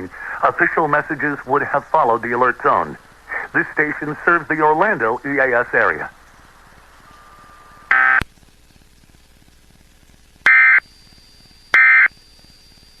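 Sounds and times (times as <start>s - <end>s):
buzzy digital squawks: 7.0s - 8.2s, 10.5s - 11.1s.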